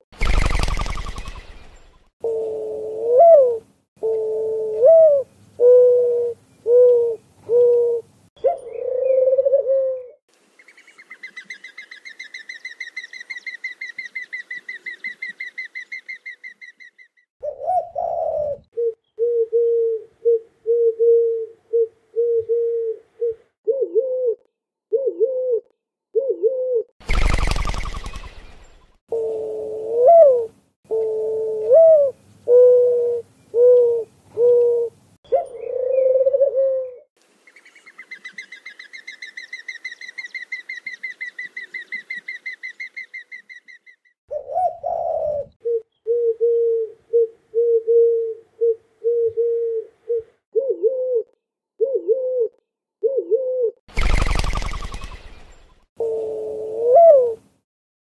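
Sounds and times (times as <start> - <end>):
doves cooing: 2.2 - 10.2, 17.4 - 28.2, 29.1 - 37.1, 44.3 - 55.0, 56.0 - 57.4.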